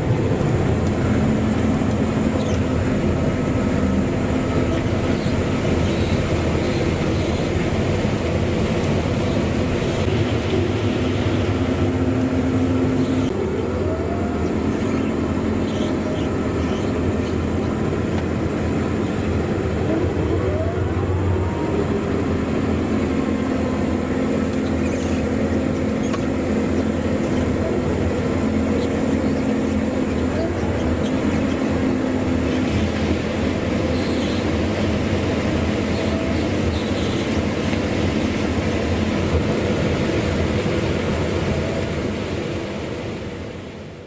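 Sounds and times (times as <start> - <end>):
combine harvester running: 0.0 - 44.0
rising machine whine: 9.1 - 35.0.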